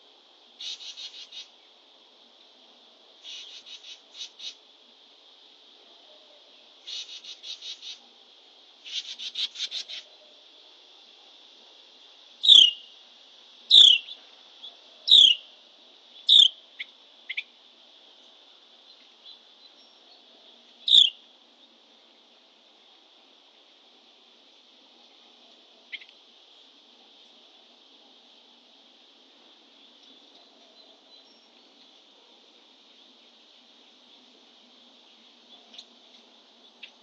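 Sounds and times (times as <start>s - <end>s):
bird trills: 12.4s - 12.9s, 13.7s - 14.2s, 20.9s - 21.2s.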